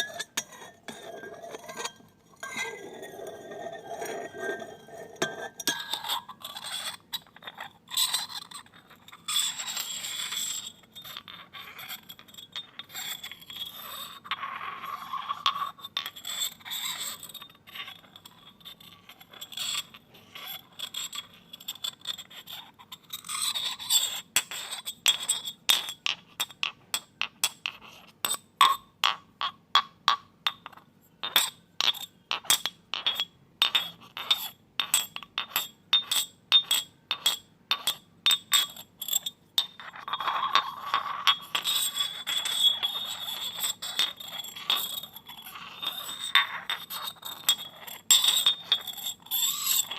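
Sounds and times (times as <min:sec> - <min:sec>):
glasses clinking: 0:00.0 - 0:06.1
glass scraping against glass: 0:00.0 - 0:26.2, 0:30.6 - 0:49.9.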